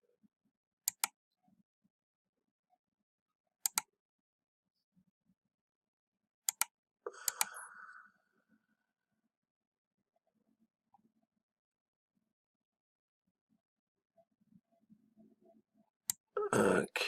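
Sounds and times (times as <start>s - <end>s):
computer mouse clicks: 0.9s - 1.2s, 3.6s - 3.9s, 6.5s - 7.6s.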